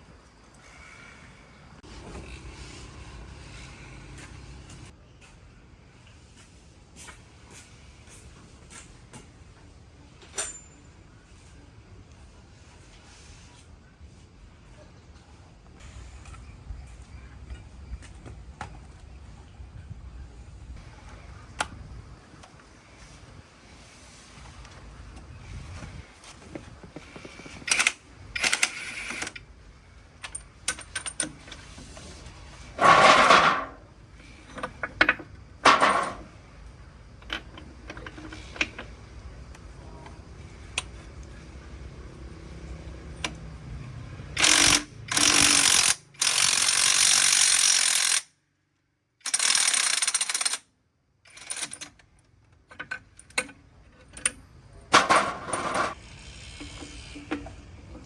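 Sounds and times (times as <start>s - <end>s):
metal tool clanks and knocks: 34.5s - 36.3s, 54.9s - 56.0s.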